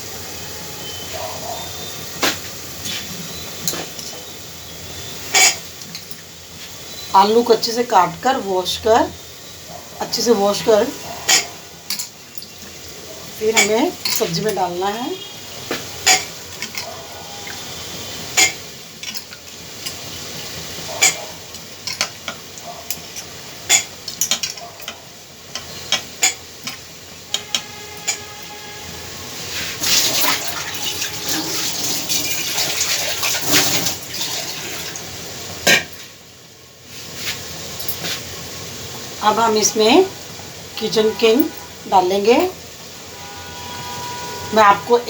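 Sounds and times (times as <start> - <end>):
steady hiss: 0.0 - 45.0
metal spoon clinking and scraping: 5.3 - 6.2, 11.2 - 12.8, 13.4 - 14.8, 16.0 - 17.7, 18.4 - 20.2, 20.8 - 28.6.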